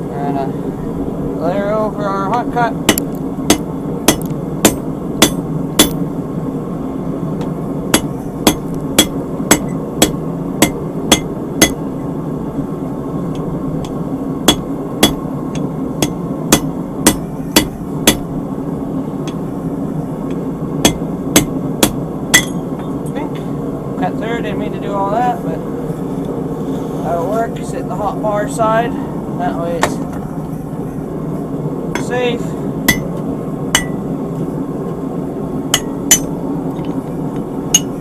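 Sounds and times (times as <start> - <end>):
hammer striking hot steel: 2.3 - 6.1, 7.4 - 11.9, 13.3 - 18.3, 19.2 - 19.5, 20.3 - 23.0, 31.9 - 32.2, 32.8 - 34.0, 35.7 - 37.0, 37.7 - 38.0.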